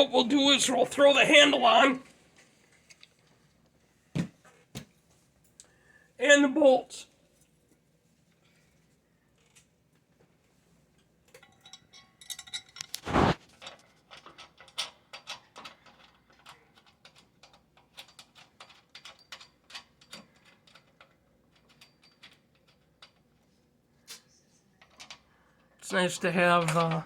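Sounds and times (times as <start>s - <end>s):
metallic clicks and clinks: 11.3s - 13.0s, 14.1s - 23.2s.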